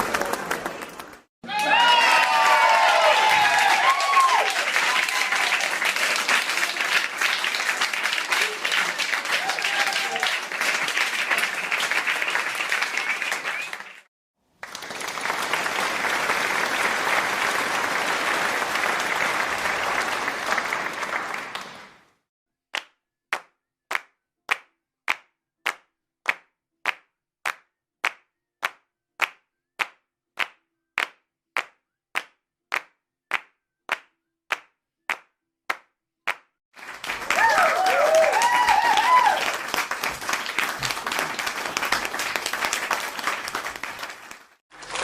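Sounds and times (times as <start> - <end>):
audience applause: 0.0 - 22.2, 36.8 - 45.0
slow steady hand claps: 22.8 - 44.6.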